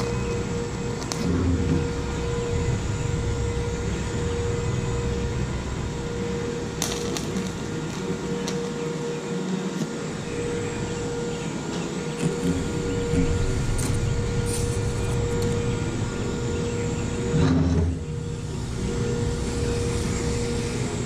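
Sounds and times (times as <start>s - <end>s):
welding arc crackles: 0.0s - 2.2s, 6.3s - 10.3s
welder hum: 0.0s - 21.0s
welding arc hissing: 6.4s - 9.0s, 18.3s - 21.0s.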